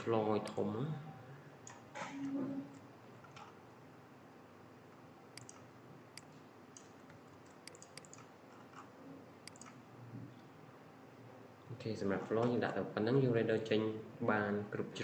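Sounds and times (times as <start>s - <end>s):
low room hiss: 0.0s - 15.0s
computer mouse clicks: 1.6s - 3.6s, 5.3s - 9.8s.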